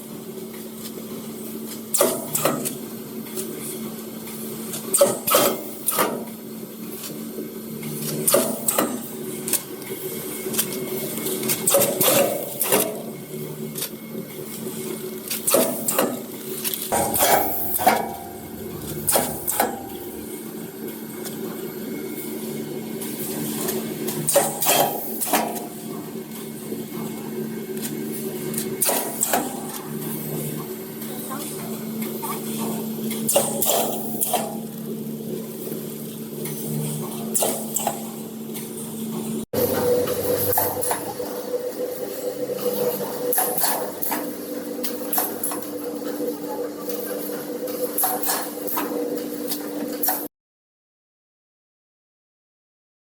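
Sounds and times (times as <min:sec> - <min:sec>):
machine clicks and knocks: 0:16.9 - 0:20.4
packing machine motor hum: 0:16.9 - 0:20.5, 0:39.6 - 0:43.3.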